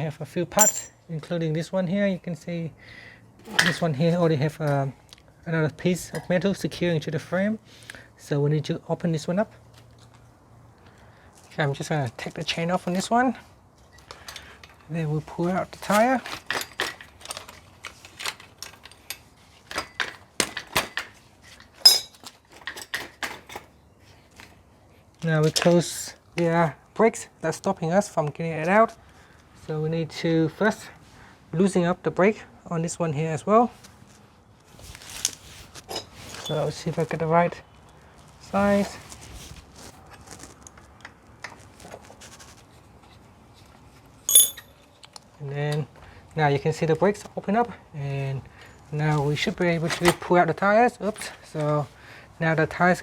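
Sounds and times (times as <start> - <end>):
hand tool clicks and scrapes: 0.6 - 1.0, 44.3 - 45.2
ringing metal clank: 0.6 - 1.0, 21.8 - 22.2, 44.3 - 44.8.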